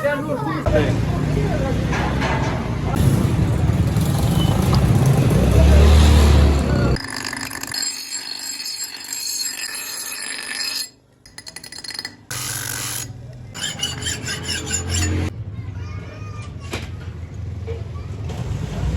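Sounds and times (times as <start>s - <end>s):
tool scraping on metal: 7.0s - 15.3s.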